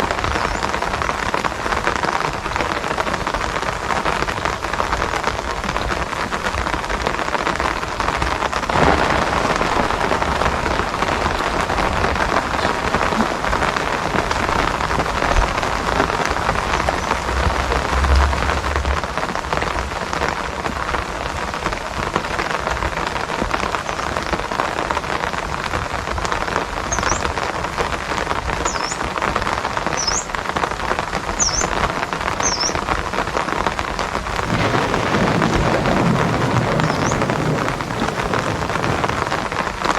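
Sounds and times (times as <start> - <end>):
heavy rainfall: 0.0 - 28.5, 33.8 - 39.9.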